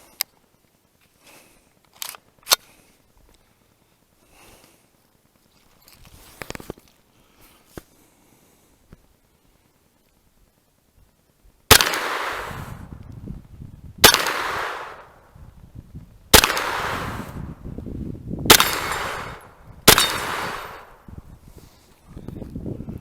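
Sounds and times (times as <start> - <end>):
gunshots with echo: 11.7 - 12.9, 14.0 - 15.2, 16.3 - 17.5, 18.5 - 21.0.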